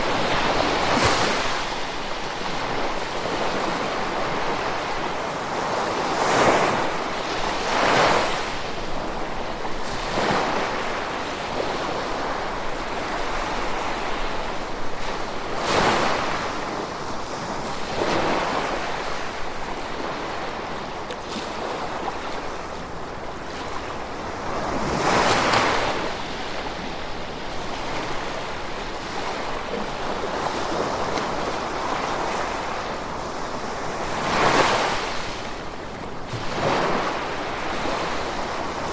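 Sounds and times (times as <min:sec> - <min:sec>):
ocean waves washing ashore: 0:00.0 - 0:38.9.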